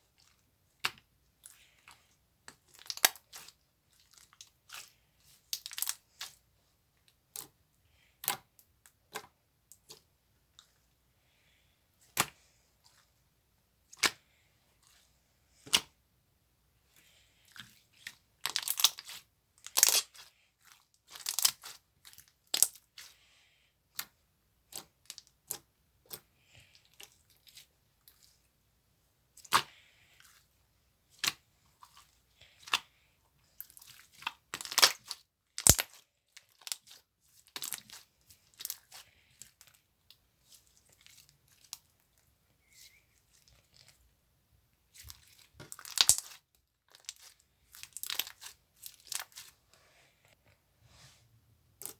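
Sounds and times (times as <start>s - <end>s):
slime crackling and popping: 35.6s - 35.9s, 45.8s - 46.4s.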